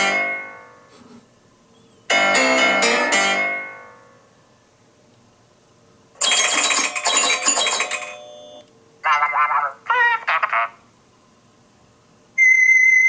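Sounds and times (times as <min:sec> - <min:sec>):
phone ringtones and alert tones: 0:06.2 - 0:09.6.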